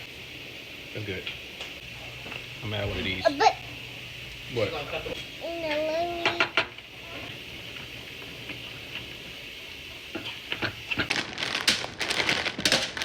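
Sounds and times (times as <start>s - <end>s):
food sizzling in a pan: 0.0s - 13.0s
crackling and spattering pops: 10.1s - 13.0s.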